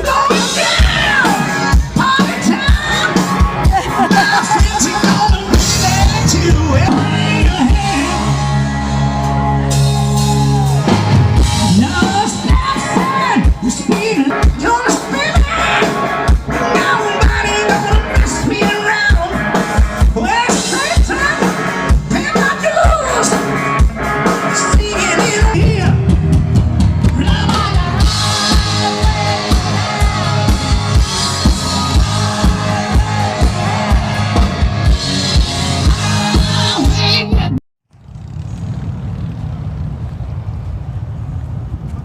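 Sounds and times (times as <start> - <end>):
person singing: 0.0 - 8.7, 11.6 - 23.5, 27.0 - 37.6
drum kit beat: 0.0 - 37.6
bass guitar: 0.0 - 39.3.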